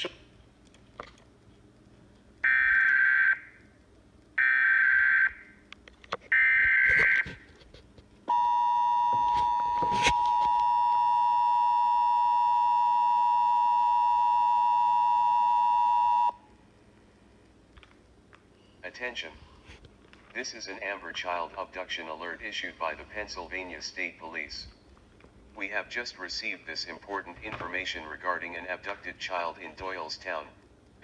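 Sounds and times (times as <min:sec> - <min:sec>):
steady alarm tone: 0:02.4 - 0:03.6, 0:04.4 - 0:05.6, 0:06.3 - 0:07.4, 0:08.3 - 0:16.4.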